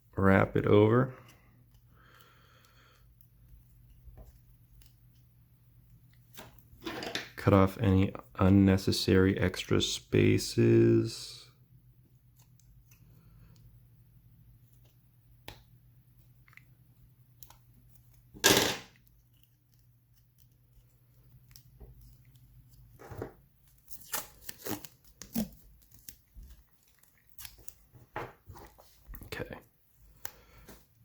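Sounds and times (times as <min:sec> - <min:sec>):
tape crinkling and handling: 0:14.6 - 0:30.9
adhesive tape ripping: 0:23.8 - 0:26.2.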